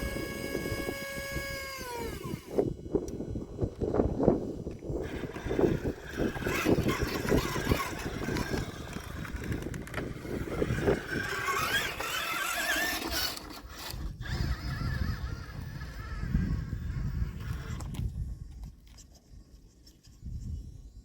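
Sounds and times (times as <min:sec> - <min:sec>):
small electric motor whining: 0:00.0 - 0:19.2.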